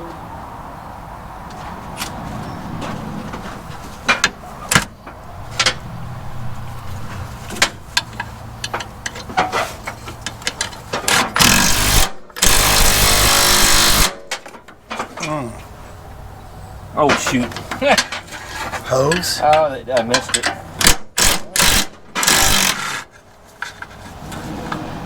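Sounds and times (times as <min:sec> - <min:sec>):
metal tools clinking: 0:07.5 - 0:15.5, 0:17.0 - 0:20.9.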